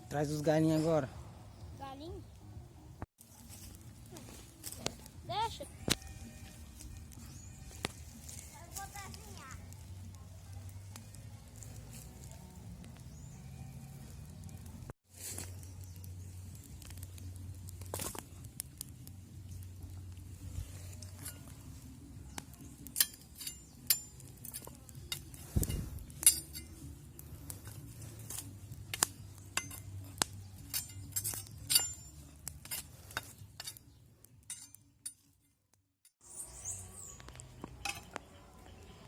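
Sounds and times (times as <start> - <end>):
metal utensils clinking on cookware: 28.3 - 33.8.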